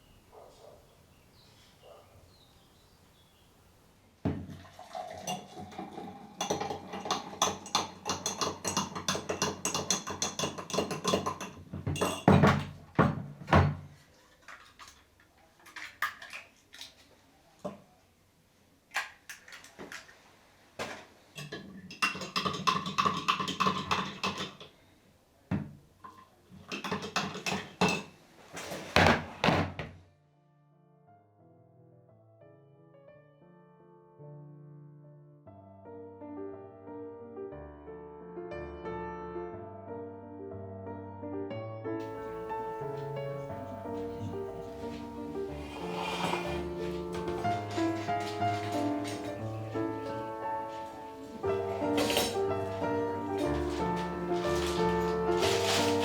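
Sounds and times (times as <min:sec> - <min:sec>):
hard objects clattering: 0:04.3 - 0:16.5, 0:20.8 - 0:24.7, 0:26.0 - 0:29.9, 0:42.0 - 0:56.0.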